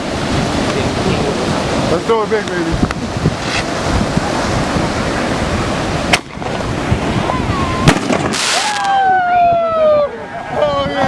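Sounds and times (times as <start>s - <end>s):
surf: 0.0s - 11.0s
wind: 0.0s - 11.0s
fireworks bangs: 6.1s - 9.1s
firework hiss and falling tone: 7.2s - 9.1s.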